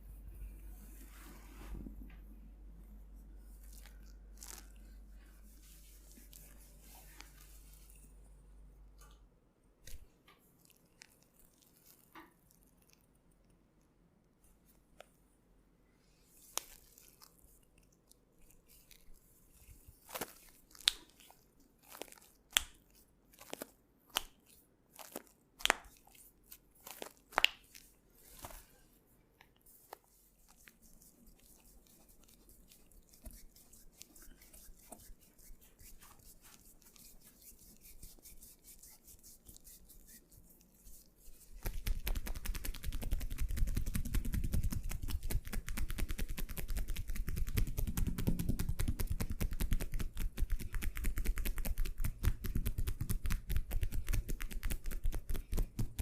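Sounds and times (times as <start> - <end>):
hands rubbing on skin: 3.4 - 8.2, 16.4 - 17.5, 18.4 - 28.8, 29.6 - 56.0
hands smacking skin: 20.0 - 28.6, 29.8 - 56.0.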